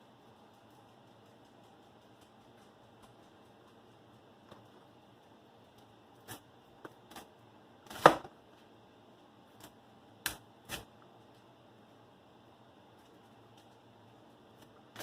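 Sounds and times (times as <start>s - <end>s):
knife cutting cauliflower: 6.2s - 8.3s, 9.6s - 10.9s, 14.6s - 15.0s.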